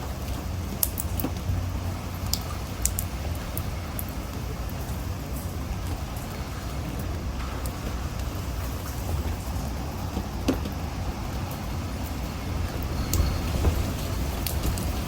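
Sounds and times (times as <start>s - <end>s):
low wind rumble: 0.0s - 15.0s
rain hissing: 0.0s - 15.0s.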